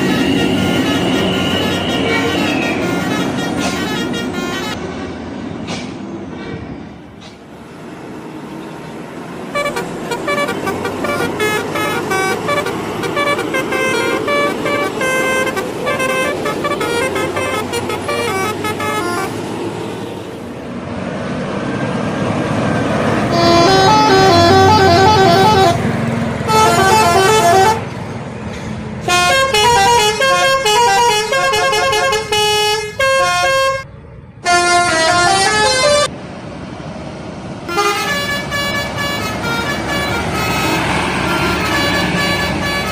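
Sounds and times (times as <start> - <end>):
multi-tone air horn melody: 0.0 - 4.8, 9.5 - 19.4, 23.3 - 25.8, 26.5 - 27.9, 29.0 - 36.1, 37.7 - 42.9
bus engine: 0.0 - 42.9.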